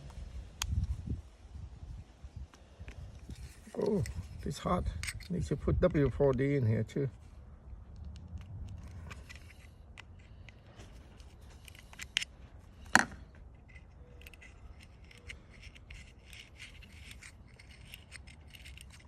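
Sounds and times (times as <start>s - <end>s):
lighter metal clicks and scraping: 2.5s - 6.5s, 7.9s - 19.0s.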